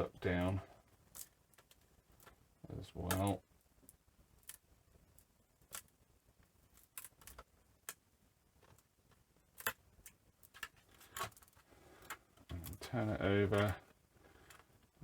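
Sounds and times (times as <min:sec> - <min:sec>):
plastic laptop parts clicking: 0:09.6 - 0:12.8.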